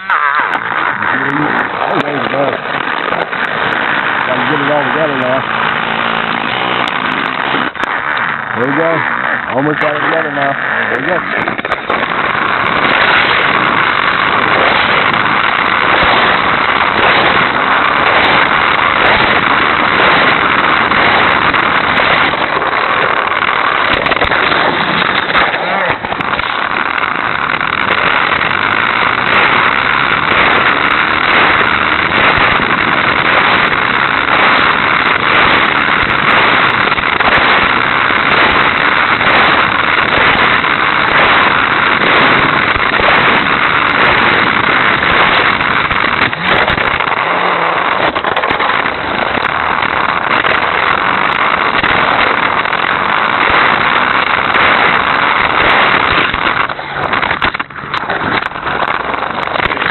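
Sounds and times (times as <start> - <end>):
toy race car motor: 0.0 - 59.9.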